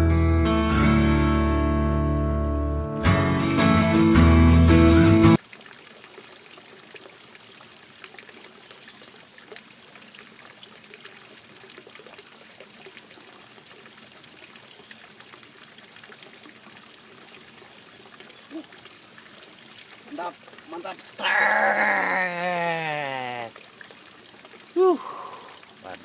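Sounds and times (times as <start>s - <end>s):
stream water trickling: 1.5s - 4.2s, 5.3s - 26.0s
small splashes: 5.4s - 26.0s.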